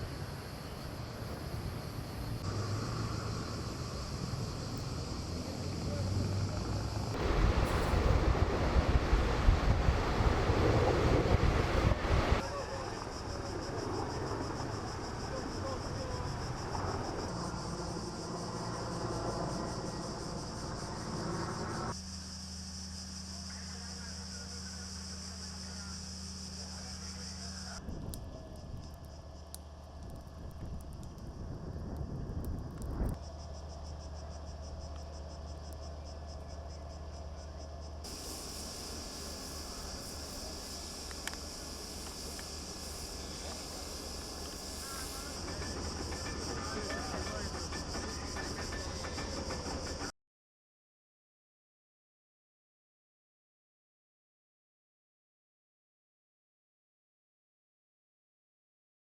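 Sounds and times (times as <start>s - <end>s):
high-pitched insect drone: 0.0s - 8.1s, 12.4s - 50.1s
low engine hum: 0.0s - 12.4s
rushing noise: 0.0s - 12.4s, 38.1s - 50.1s
low wind rumble: 0.0s - 21.9s, 27.8s - 35.4s
cicadas buzzing: 0.0s - 50.1s.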